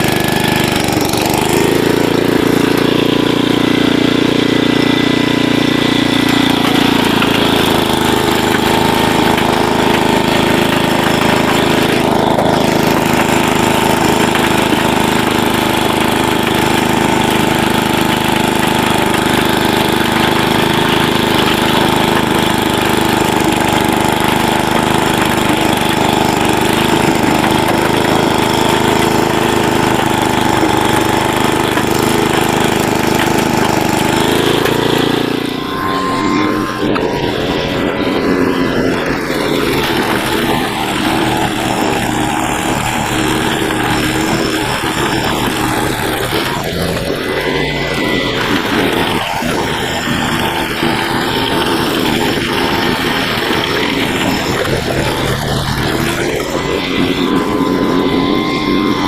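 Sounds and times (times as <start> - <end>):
small rototiller engine running: 0.0 - 59.0.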